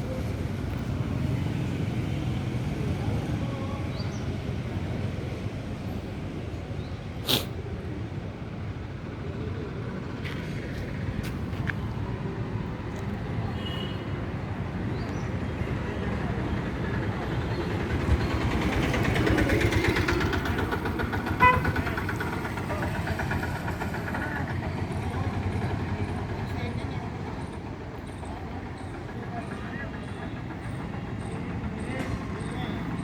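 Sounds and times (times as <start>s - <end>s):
vehicle engine rumbling: 8.7s - 33.0s.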